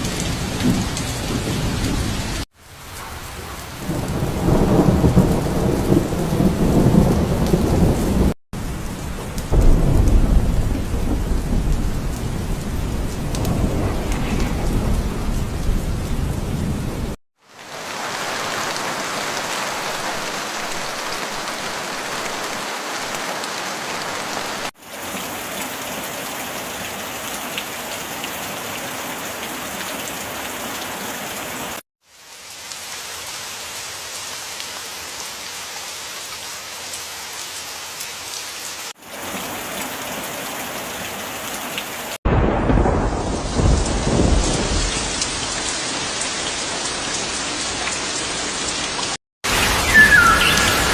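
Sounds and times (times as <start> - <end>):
heavy rain: 0.0 - 50.9
thunder rumbling: 3.0 - 17.2, 39.1 - 45.6.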